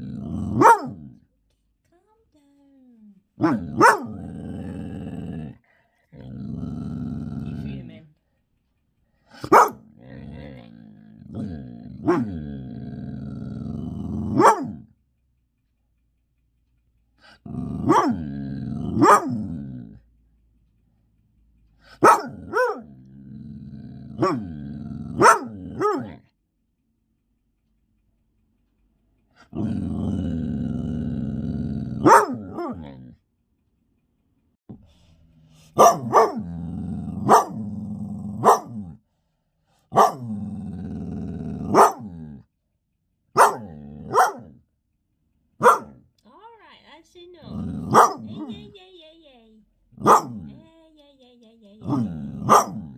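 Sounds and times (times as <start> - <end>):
dog growling: 0.0 - 1.2, 3.4 - 8.0, 9.2 - 14.9, 17.2 - 20.1, 21.8 - 26.3, 29.3 - 33.2, 34.7 - 39.0, 39.8 - 42.5, 43.4 - 44.6, 45.6 - 46.0, 47.4 - 48.7, 50.0 - 50.6, 51.8 - 52.9
dog barking: 0.5 - 1.2, 3.4 - 4.3, 9.4 - 9.9, 12.0 - 12.3, 14.3 - 14.9, 17.8 - 18.2, 18.9 - 19.5, 21.9 - 22.9, 24.2 - 24.5, 25.1 - 26.2, 32.0 - 33.0, 35.7 - 36.5, 37.2 - 37.7, 38.4 - 39.0, 39.9 - 40.3, 41.6 - 42.1, 43.4 - 44.6, 45.6 - 46.0, 47.8 - 48.7, 50.0 - 50.5, 51.8 - 52.9.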